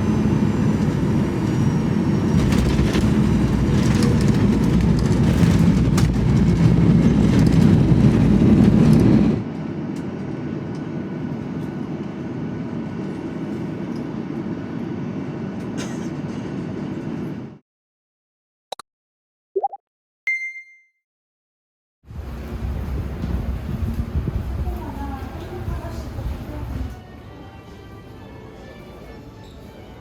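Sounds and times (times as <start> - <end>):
airliner cabin rumble: 0.0 - 17.5, 22.1 - 27.0.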